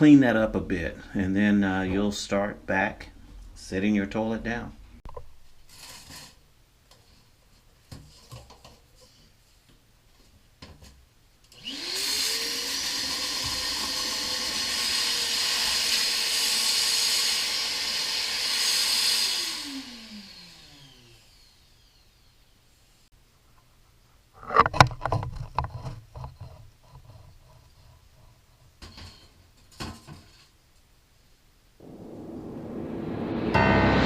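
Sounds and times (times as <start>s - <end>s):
shop vac motor whining: 11.6s - 22.5s.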